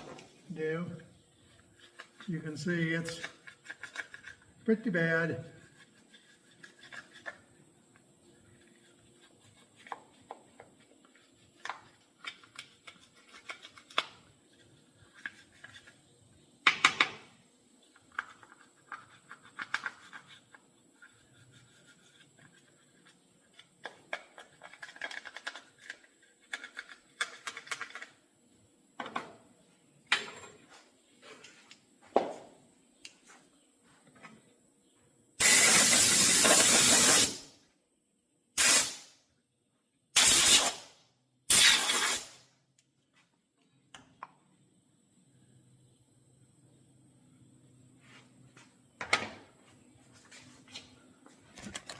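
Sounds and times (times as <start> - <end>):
hand tools scraping and tapping: 1.6 - 2.4, 3.0 - 4.5.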